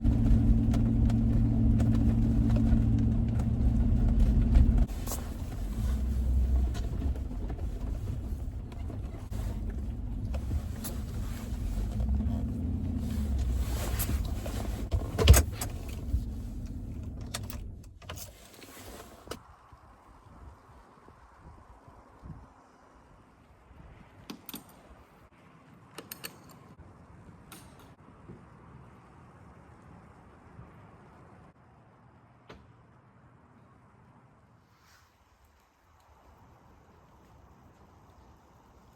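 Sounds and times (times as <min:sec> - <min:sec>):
engine knocks: 0:00.0 - 0:04.9
vehicle engine running: 0:00.0 - 0:17.8.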